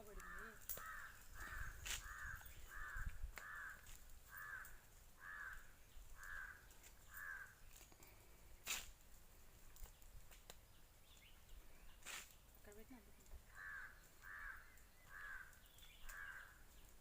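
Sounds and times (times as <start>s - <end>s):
crow cawing: 0.0s - 7.6s, 13.5s - 16.6s.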